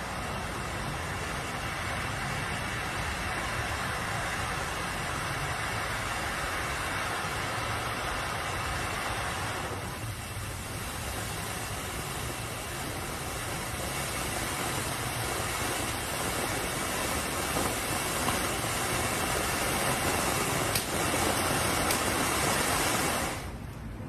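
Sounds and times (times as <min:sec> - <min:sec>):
firework fountain hissing sparks: 0:00.0 - 0:24.0
sharp pops: 0:13.2 - 0:23.5.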